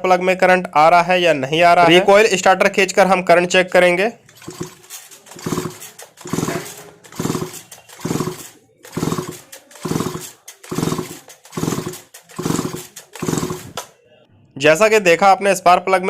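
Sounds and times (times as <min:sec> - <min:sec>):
chainsaw recoil starter pulls: 0:04.2 - 0:13.9.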